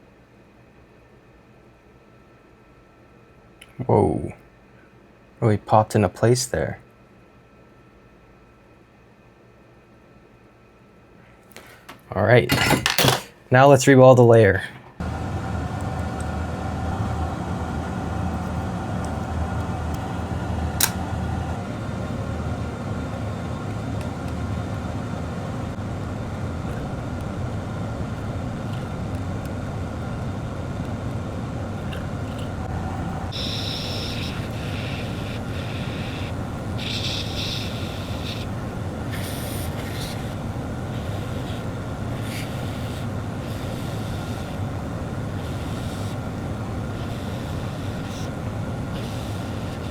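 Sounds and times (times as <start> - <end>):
airflow blowing: 15.0 - 49.9
higher hissing: 15.0 - 49.9
sharp click: 20.8 - 21.1.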